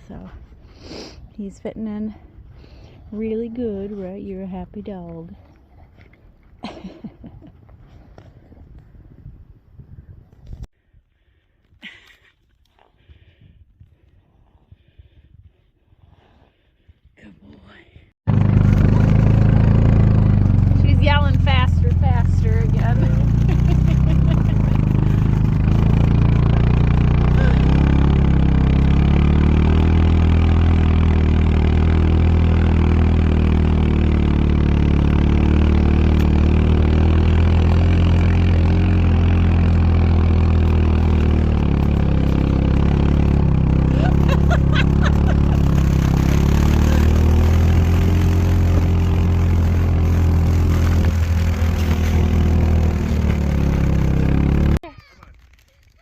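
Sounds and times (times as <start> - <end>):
engine running at low speed: 18.3 - 54.8.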